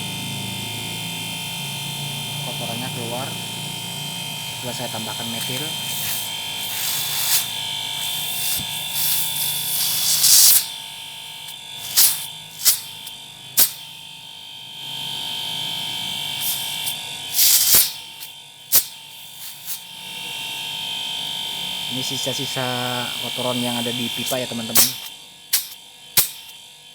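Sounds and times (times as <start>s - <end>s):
steady electric hum: 0.0s - 26.9s
long hiss: 5.5s - 10.7s, 11.5s - 13.8s, 16.4s - 19.8s, 24.7s - 26.5s
short hissing spurts: 5.8s - 10.7s, 11.8s - 13.8s, 16.4s - 19.9s, 24.7s - 26.5s.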